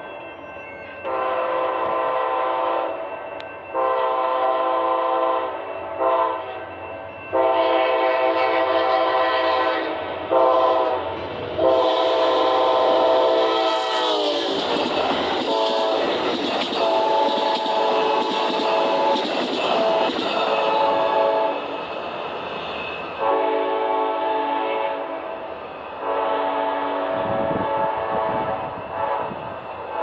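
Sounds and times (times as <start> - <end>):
train rolling by: 0.0 - 30.0
locomotive air horn blasts: 1.1 - 3.0, 3.8 - 6.6, 7.4 - 14.4, 15.4 - 16.2, 16.8 - 19.3, 20.7 - 21.6, 23.2 - 25.4, 26.0 - 30.0.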